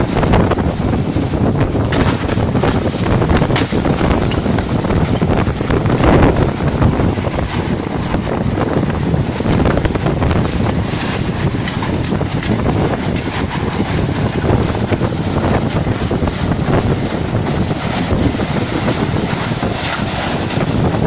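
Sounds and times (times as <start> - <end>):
strong wind buffeting microphone: 0.0 - 21.0.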